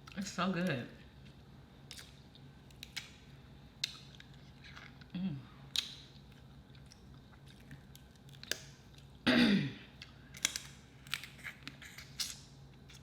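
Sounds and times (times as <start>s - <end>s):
shellfish shells cracking: 1.8s - 3.2s, 5.7s - 9.1s, 10.0s - 13.0s
chewing: 3.8s - 9.1s.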